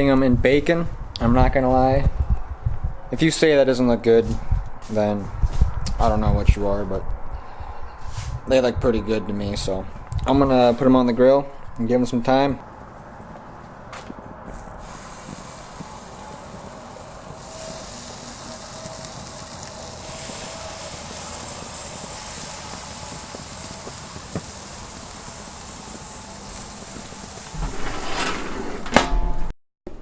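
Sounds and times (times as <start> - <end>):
meat sizzling on a grill: 14.5 - 27.6.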